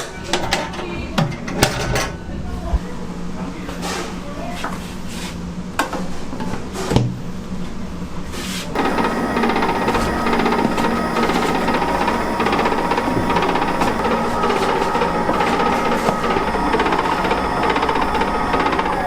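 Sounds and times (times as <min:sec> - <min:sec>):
machine clattering: 0:08.8 - 0:19.0.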